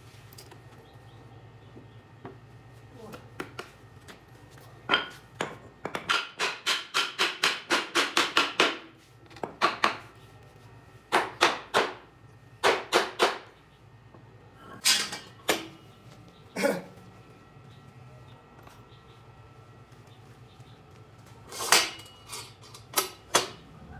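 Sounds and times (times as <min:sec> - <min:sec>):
hammer strikes: 0:04.9 - 0:08.9.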